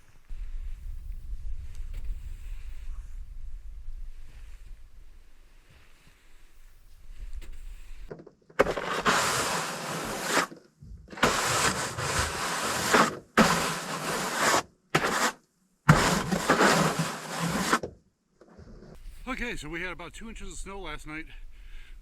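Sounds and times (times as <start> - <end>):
brush sweeping snow: 8.6 - 17.9.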